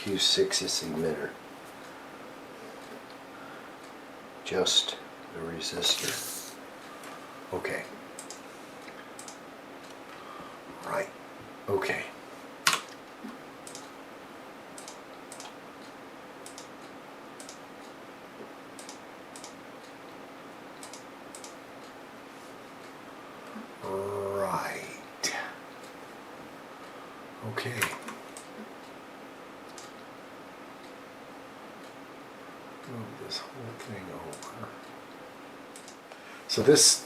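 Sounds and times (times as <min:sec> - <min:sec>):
faint steady hum: 0:00.0 - 0:37.0
room tone hiss: 0:00.0 - 0:37.0
computer clicks: 0:08.2 - 0:10.0, 0:13.6 - 0:14.0, 0:14.8 - 0:16.7, 0:17.4 - 0:17.6, 0:18.8 - 0:19.6, 0:20.8 - 0:21.6, 0:27.7 - 0:28.6, 0:29.6 - 0:30.1, 0:34.3 - 0:34.6, 0:35.7 - 0:36.0.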